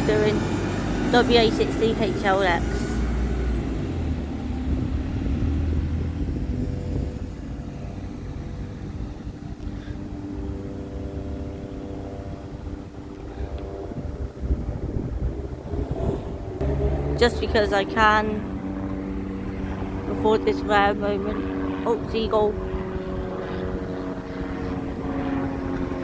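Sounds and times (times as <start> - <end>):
diesel bus engine rumbling: 0.0 - 23.2.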